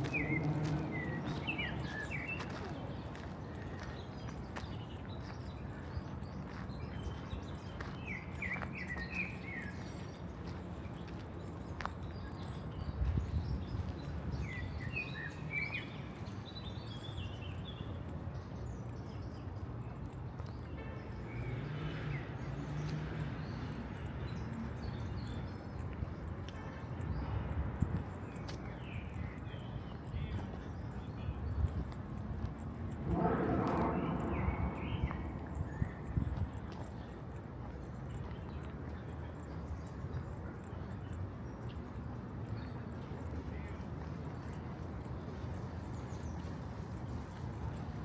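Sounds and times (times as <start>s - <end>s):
bird chirping: 0.0s - 18.2s
footsteps clicking: 0.0s - 18.4s
distant traffic hum: 0.0s - 48.0s
footsteps on pavement: 0.0s - 48.0s
small birds chirping: 0.0s - 48.0s.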